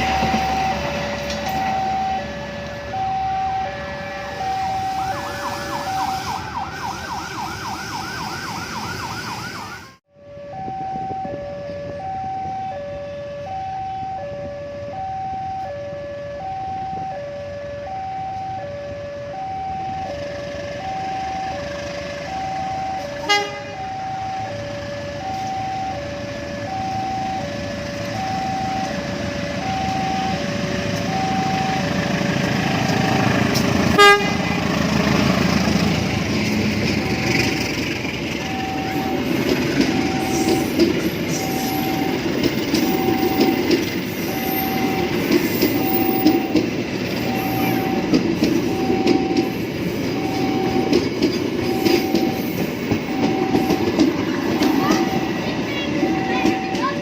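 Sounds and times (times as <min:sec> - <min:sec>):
train rumble: 0:00.0 - 0:07.4, 0:19.2 - 0:57.0
level crossing alarm: 0:00.0 - 0:34.8, 0:35.8 - 0:57.0.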